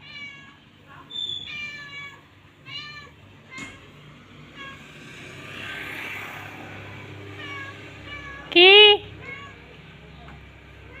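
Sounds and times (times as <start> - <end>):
low hum of traffic: 0.0 - 11.0
vehicle passing by: 3.1 - 11.0.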